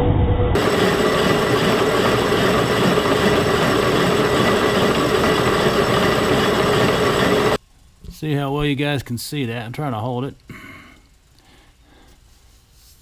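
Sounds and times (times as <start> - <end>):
milling machine cutting metal: 0.6 - 7.6.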